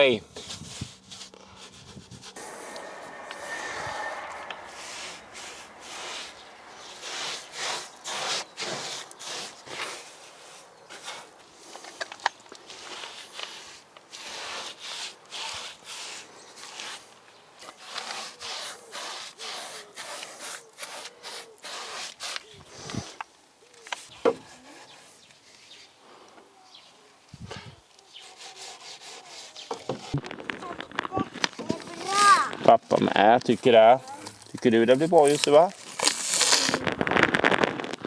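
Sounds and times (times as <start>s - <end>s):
paintbrush rubbing on wood: 0.4s - 11.2s, 13.0s - 17.1s, 17.7s - 22.4s, 28.2s - 30.2s.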